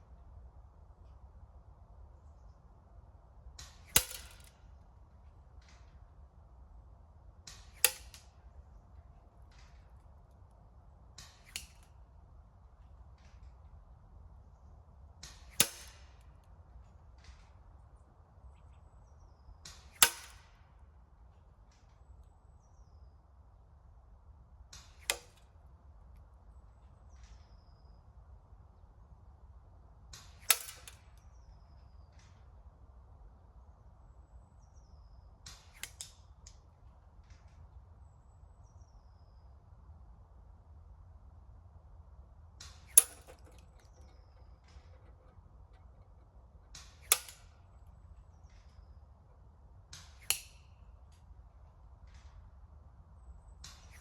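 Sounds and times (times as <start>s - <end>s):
spring airsoft rifle shots: 3.6s - 4.5s, 15.3s - 16.1s, 19.8s - 20.5s, 42.6s - 48.8s.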